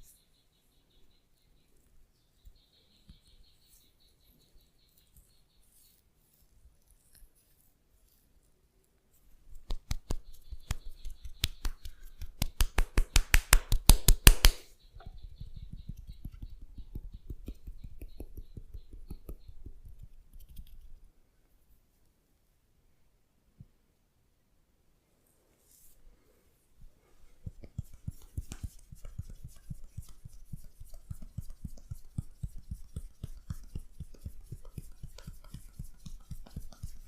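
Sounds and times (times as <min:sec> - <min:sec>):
rubbing or patting strokes: 0:09.2 - 0:21.0, 0:26.8 - 0:37.0
rapid percussive massage strikes: 0:09.5 - 0:14.7, 0:27.4 - 0:37.0.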